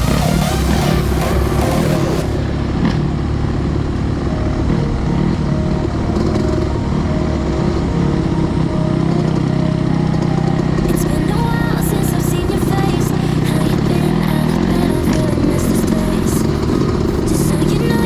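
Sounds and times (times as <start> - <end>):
dirt bike engine running: 0.0 - 10.9.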